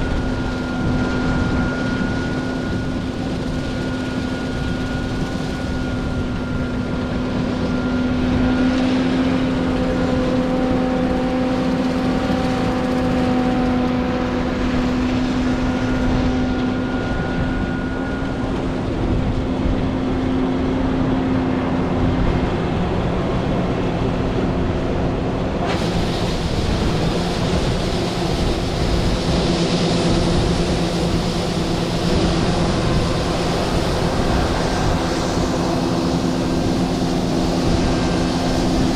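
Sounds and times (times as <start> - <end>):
diesel engine droning: 0.0 - 38.9
threshing machinery rushing: 25.6 - 38.9.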